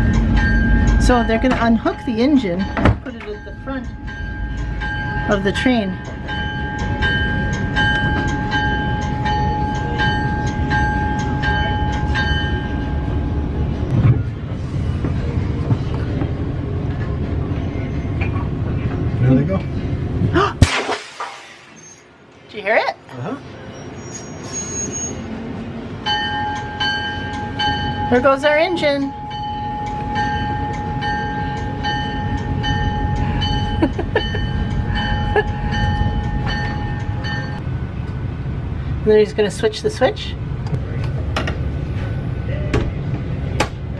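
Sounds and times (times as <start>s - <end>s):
locomotive bell ringing: 0.0s - 13.9s, 23.8s - 38.4s
low engine rumble: 0.0s - 20.7s, 25.3s - 43.9s
sharp metal clank: 20.6s - 22.0s.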